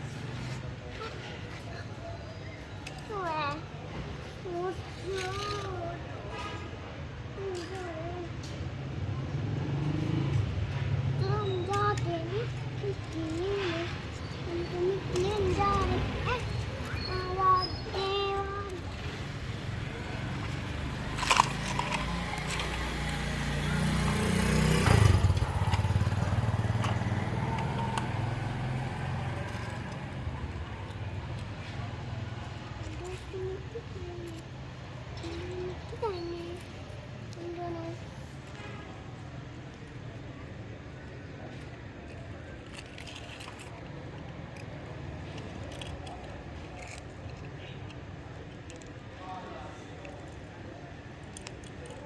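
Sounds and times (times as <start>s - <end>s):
vehicle engine passing by: 8.6s - 18.0s, 18.7s - 38.6s.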